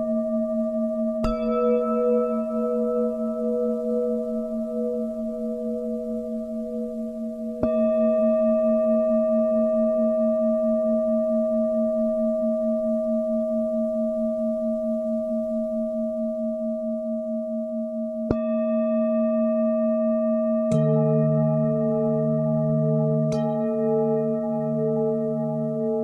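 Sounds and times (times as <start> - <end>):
singing bowl ringing: 0.0 - 10.6.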